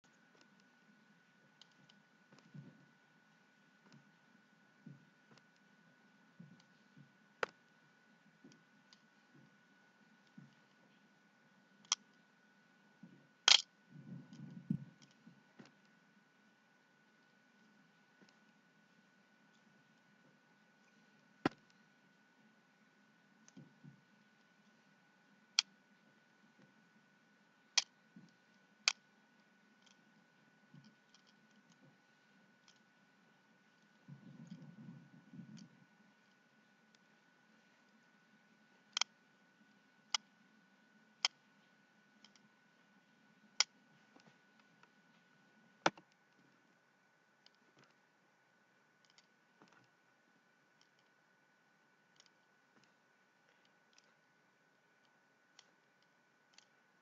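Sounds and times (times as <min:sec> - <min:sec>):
fidget spinner clicks: 0:13.5 - 0:13.7, 0:55.6 - 0:56.8
sharp clicks: 0:13.5 - 0:13.7
faint ticks: 0:50.7 - 0:51.3.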